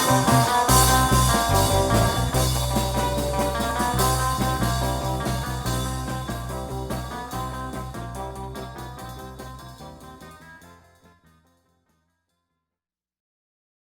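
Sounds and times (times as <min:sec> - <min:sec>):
instrumental background music: 0:00.0 - 0:10.5.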